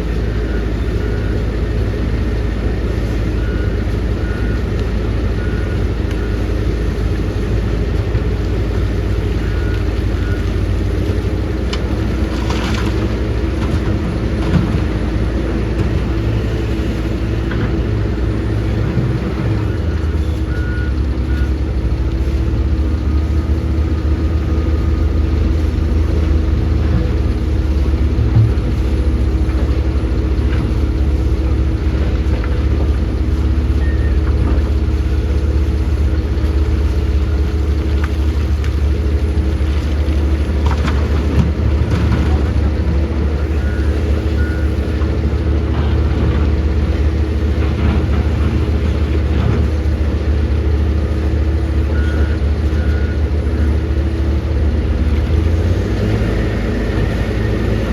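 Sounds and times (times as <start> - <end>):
heavy diesel engine running: 0.0 - 57.9
short beeps: 33.8 - 34.2.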